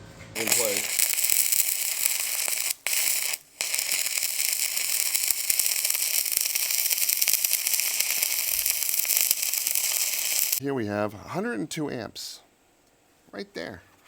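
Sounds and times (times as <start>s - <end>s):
welding arc crackling: 0.4s - 10.6s.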